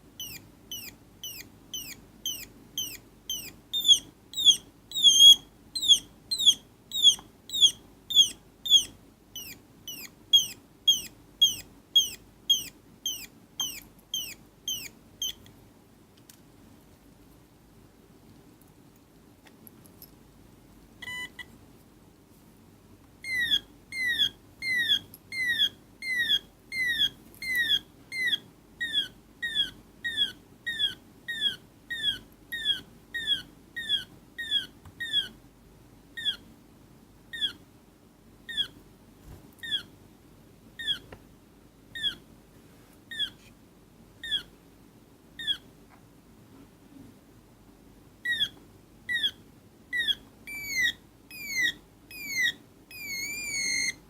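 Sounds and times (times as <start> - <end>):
synthetic bird chirps: 0.2 - 15.4, 23.3 - 35.3, 50.0 - 54.0.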